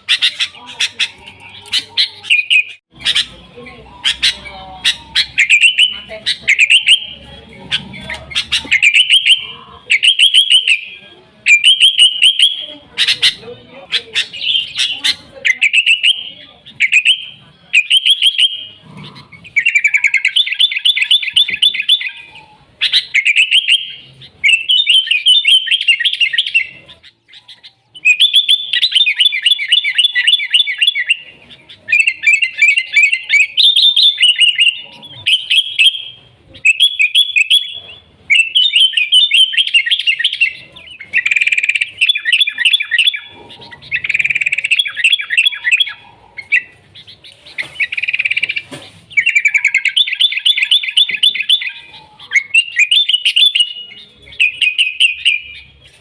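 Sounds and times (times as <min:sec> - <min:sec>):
bulbul singing chattering notes: 0:00.0 - 0:56.0.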